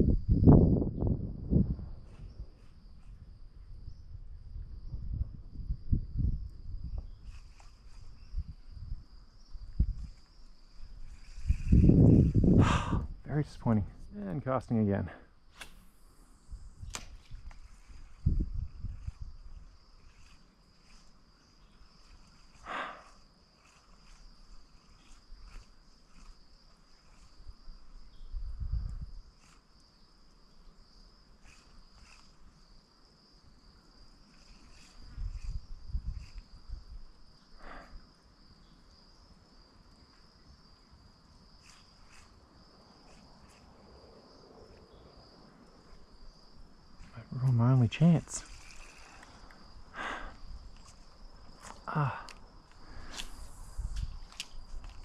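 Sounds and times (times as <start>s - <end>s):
high-pitched insect buzzing: 9.9s - 12.5s, 17.6s - 29.6s, 31.4s - 32.8s, 34.3s - 36.8s, 41.6s - 42.4s, 48.4s - 49.8s.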